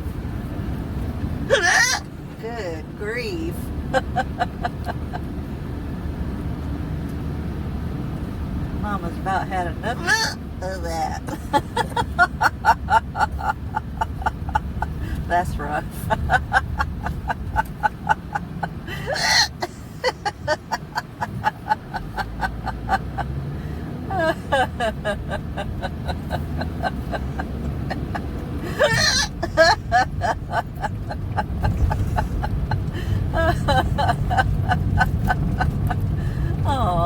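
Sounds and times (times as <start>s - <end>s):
car road rumble: 0.0s - 37.0s.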